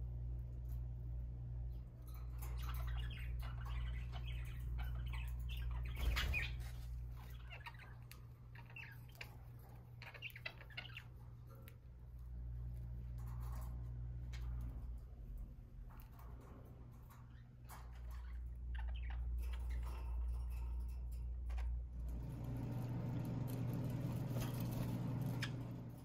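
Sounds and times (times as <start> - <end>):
low steady hum: 0.0 - 26.0
budgerigars chirping: 2.4 - 11.6, 17.2 - 20.6.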